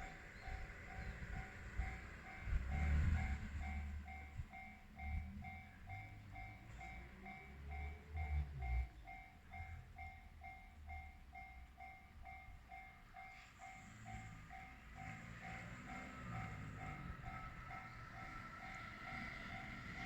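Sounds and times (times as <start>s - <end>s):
level crossing warning bell: 0.0s - 20.0s.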